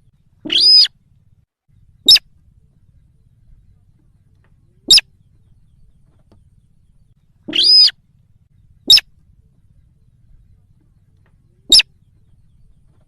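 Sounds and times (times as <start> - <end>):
recorded bird calls: 0.0 - 13.0.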